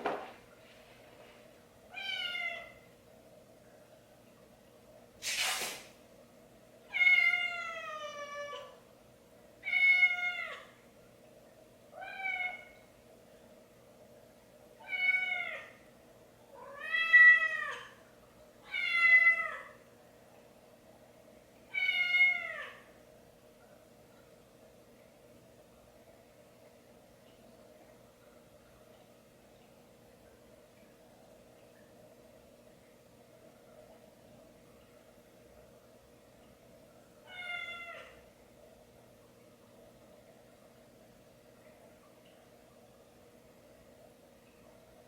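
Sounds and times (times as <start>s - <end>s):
faint steady hum: 0.0s - 45.0s
cat meowing: 1.9s - 2.8s, 37.3s - 38.2s
short burst of noise: 5.2s - 6.0s.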